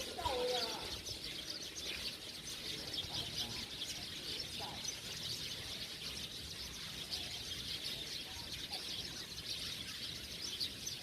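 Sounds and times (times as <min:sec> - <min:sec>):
small birds chirping: 0:00.0 - 0:11.0.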